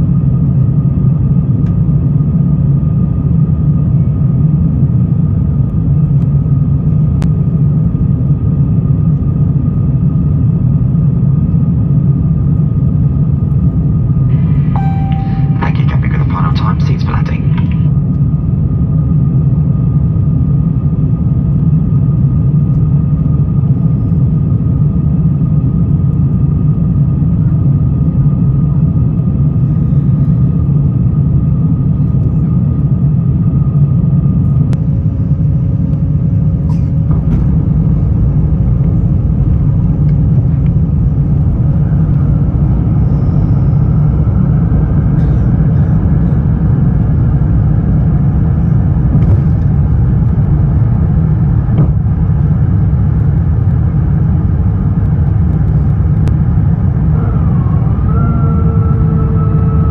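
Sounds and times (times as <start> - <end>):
airplane cabin rumble: 0.0 - 59.9
high whine: 0.0 - 59.9
faint whines: 2.7 - 59.9
tone: 14.3 - 17.8.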